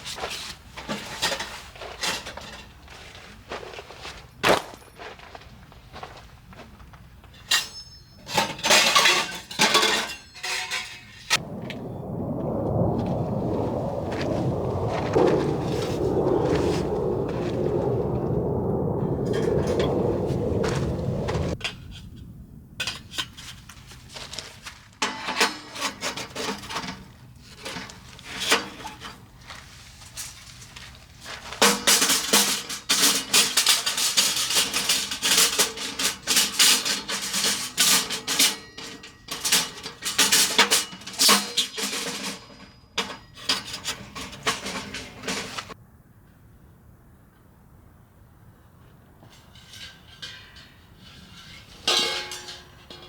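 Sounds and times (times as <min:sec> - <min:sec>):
steady rushing noise: 0:11.4 - 0:22.6.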